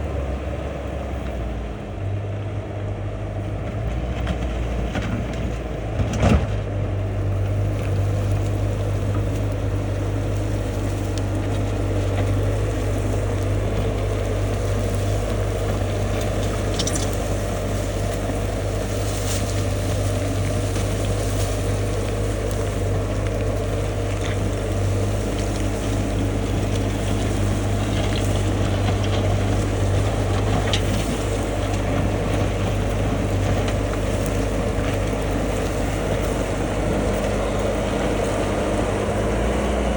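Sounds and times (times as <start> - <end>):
diesel engine running: 0.0 - 39.9
faint clicks: 7.7 - 38.5.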